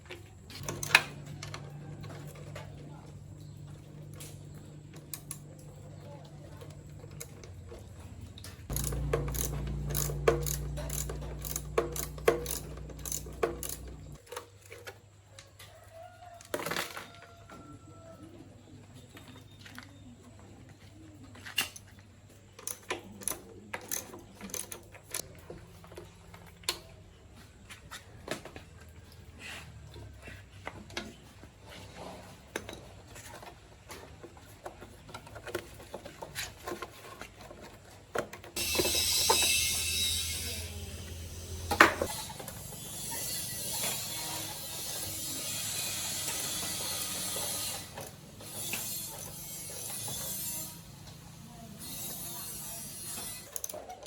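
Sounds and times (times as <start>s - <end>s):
metal tool clicks and ratcheting: 8.7s - 14.2s, 22.6s - 25.2s.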